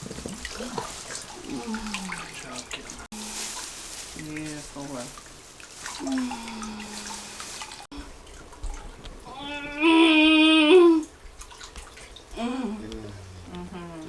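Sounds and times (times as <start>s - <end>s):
woman moaning: 9.3s - 11.1s, 12.4s - 12.9s.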